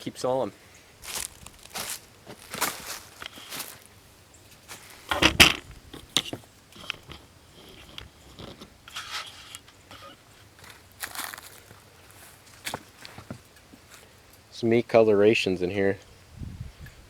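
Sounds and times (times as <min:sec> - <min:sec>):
wood knocking and scraping: 0:04.8 - 0:11.8, 0:12.6 - 0:13.4.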